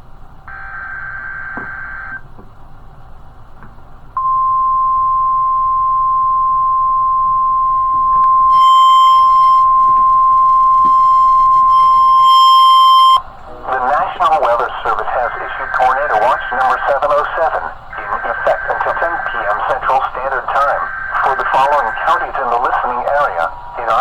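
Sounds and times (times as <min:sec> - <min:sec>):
single-pitch warning alarm tone: 0:00.5 - 0:02.2, 0:04.2 - 0:13.3.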